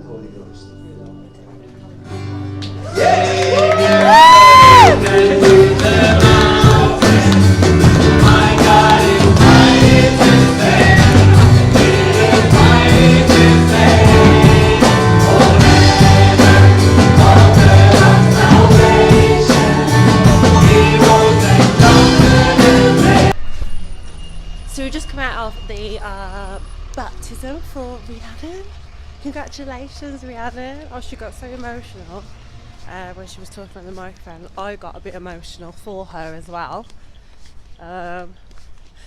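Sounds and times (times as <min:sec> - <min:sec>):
song with band and singing: 0:02.9 - 0:23.4.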